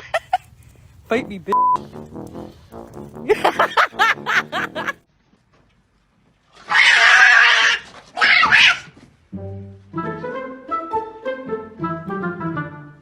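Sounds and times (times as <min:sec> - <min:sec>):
animal calls sliding up and down: 0:06.5 - 0:09.0.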